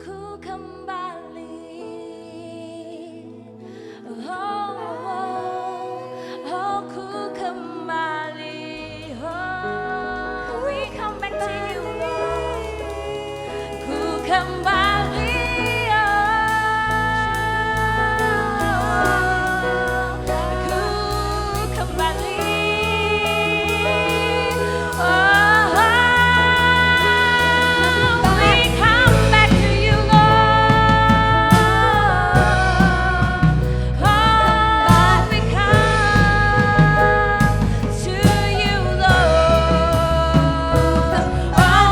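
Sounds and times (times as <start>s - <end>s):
worship song singing: 0.0s - 41.9s
bass line: 9.0s - 41.9s
drums: 10.6s - 41.9s.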